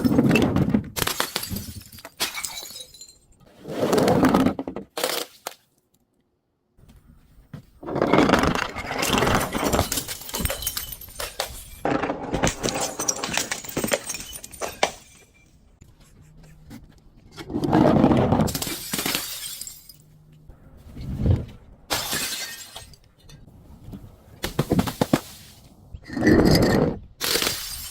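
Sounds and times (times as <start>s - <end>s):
glass bottle crushing: 1.0s - 3.3s, 7.9s - 15.6s, 18.5s - 20.1s, 21.9s - 23.0s, 26.2s - 27.9s.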